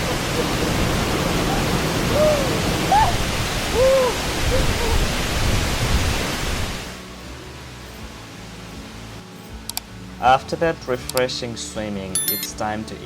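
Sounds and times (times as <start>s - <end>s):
waterfall rushing: 0.0s - 7.0s.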